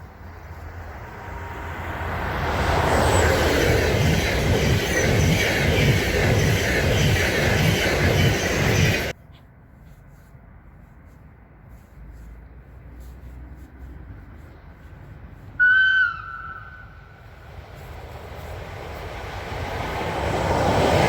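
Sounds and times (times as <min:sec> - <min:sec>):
electric train passing: 0:00.0 - 0:09.2, 0:15.6 - 0:21.0
wheels clattering on rails: 0:02.4 - 0:09.2.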